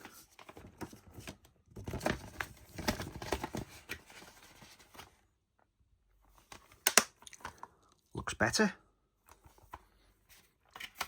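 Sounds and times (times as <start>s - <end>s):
plastic case rustling and clicking: 0.4s - 5.1s.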